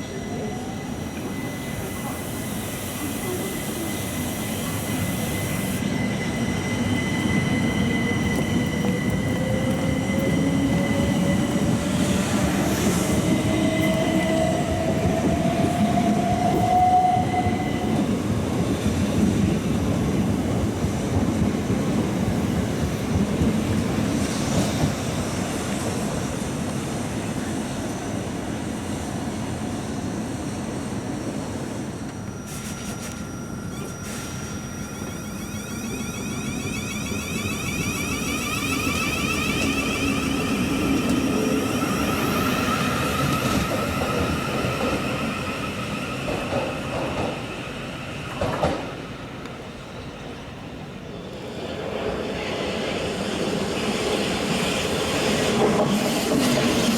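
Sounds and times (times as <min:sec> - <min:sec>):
steady high squeal: 0:00.0 - 0:18.8, 0:27.8 - 0:48.3
train traction motors whining: 0:31.8 - 0:46.7.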